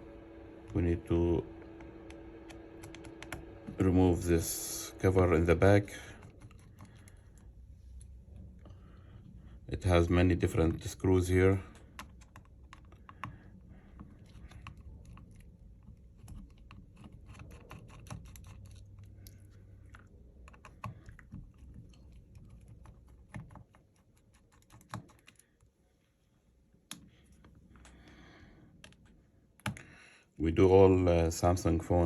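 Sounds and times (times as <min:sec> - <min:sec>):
screwdriver clicks and taps: 0:02.1 - 0:03.4.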